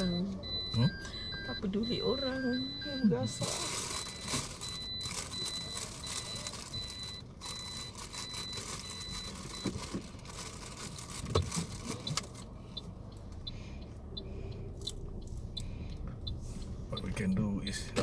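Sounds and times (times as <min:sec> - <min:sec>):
electronic warning beeps: 0:00.0 - 0:09.9, 0:15.2 - 0:18.0
light regular ticking: 0:12.0 - 0:18.0.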